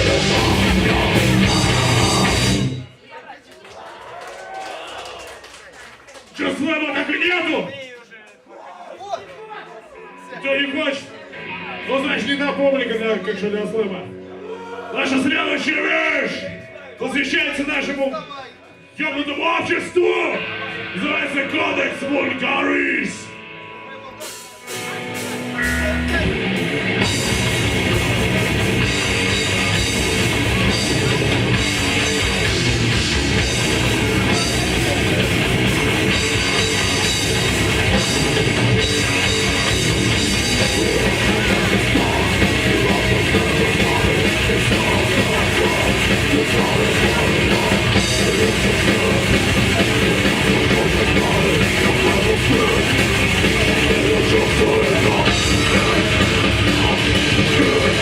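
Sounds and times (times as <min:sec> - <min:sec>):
death metal band playing live: 0:00.0 - 0:02.9, 0:19.3 - 0:58.0
drum kit: 0:00.0 - 0:02.9, 0:24.2 - 0:58.0
distorted electric guitars: 0:00.0 - 0:03.0, 0:19.6 - 0:58.0.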